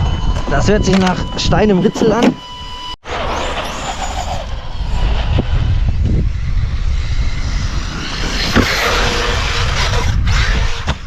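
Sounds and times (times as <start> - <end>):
electric motor revving whine: 3.1 - 11.0
wind rumble on microphone: 3.6 - 11.0.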